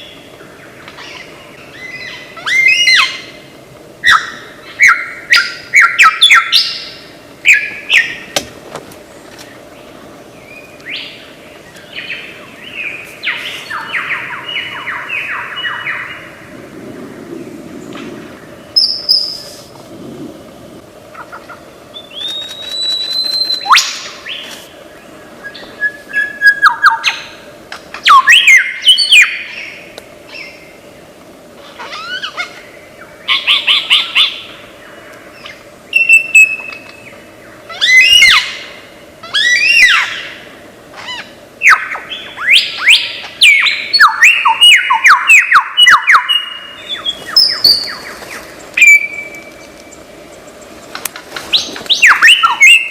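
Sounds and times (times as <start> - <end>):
faint steady hum: 0.0 - 52.9
lyrebird singing mimicked calls: 51.6 - 52.9.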